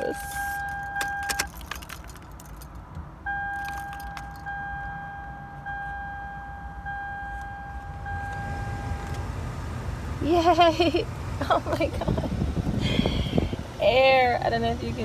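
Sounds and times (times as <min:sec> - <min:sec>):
dashboard warning chime: 0:00.0 - 0:01.5, 0:03.2 - 0:09.4
car keys jangling: 0:00.0 - 0:04.7.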